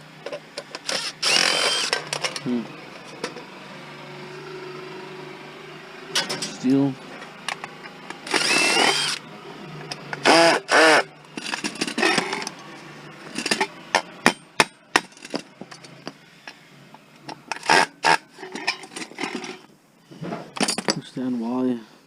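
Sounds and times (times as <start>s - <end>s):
whirring bursts: 0.8s - 2.2s, 7.4s - 13.1s.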